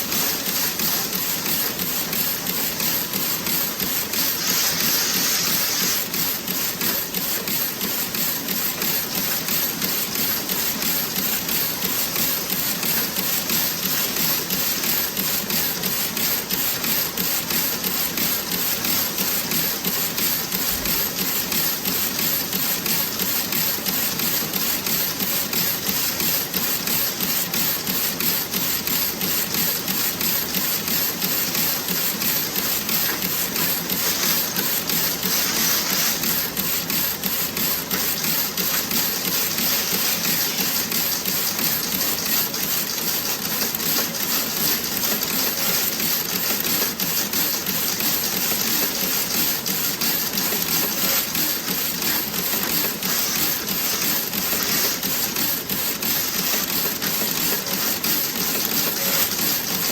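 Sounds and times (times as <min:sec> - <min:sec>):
knitting machine clattering: 0:32.2 - 0:59.9.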